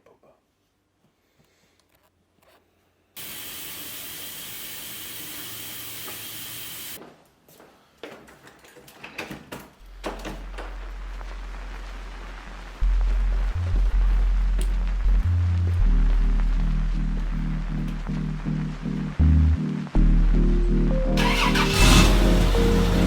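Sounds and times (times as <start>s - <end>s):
steady hiss: 3.2s - 7.0s.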